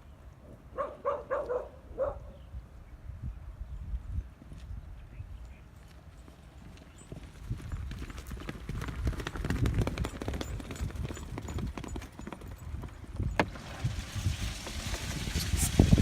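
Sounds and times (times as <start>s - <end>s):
wind rumble on microphone: 1.9s - 5.9s, 7.1s - 16.0s
horse hooves clip-clopping: 5.4s - 16.0s.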